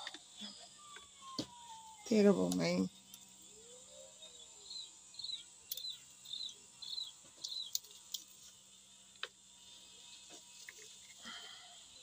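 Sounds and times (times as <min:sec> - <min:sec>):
bird chirping: 0:00.4 - 0:08.3
sharp clicks: 0:05.6 - 0:06.5.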